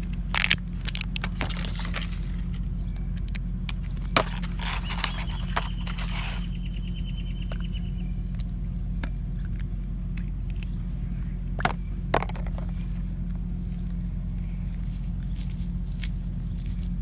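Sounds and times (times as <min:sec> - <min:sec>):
steady low hum: 0:00.0 - 0:17.0
plastic toys clicking: 0:00.3 - 0:02.0, 0:11.6 - 0:12.7.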